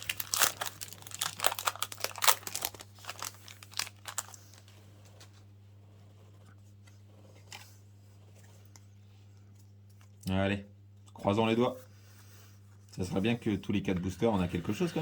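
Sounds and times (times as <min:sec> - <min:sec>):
foil wrapper tearing and crinkling: 0:00.0 - 0:04.7.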